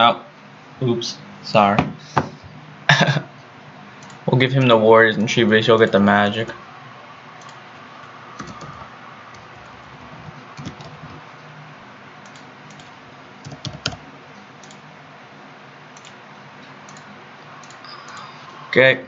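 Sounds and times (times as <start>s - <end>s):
computer keyboard typing: 8.4s - 11.2s, 12.2s - 14.0s, 14.6s - 14.8s, 16.0s - 16.2s, 16.9s - 18.4s.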